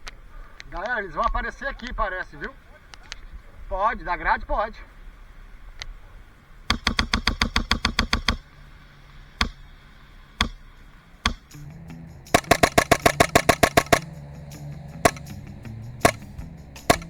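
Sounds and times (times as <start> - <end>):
airsoft rifle firing: 6.7 - 8.5, 12.3 - 14.2, 15.1 - 15.4, 16.0 - 17.0.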